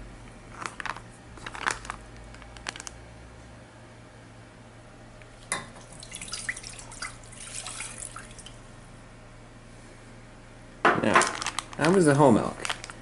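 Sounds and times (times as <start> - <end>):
liquid splashing and trickling: 5.8 - 8.6
milk pouring into a saucepan: 5.8 - 8.6.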